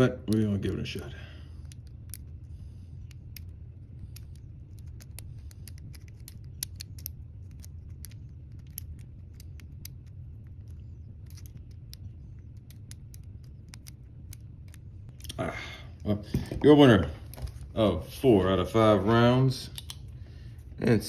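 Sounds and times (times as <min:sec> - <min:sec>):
low steady hum: 0:00.0 - 0:21.0
lock pick clicking and scraping: 0:03.0 - 0:14.8.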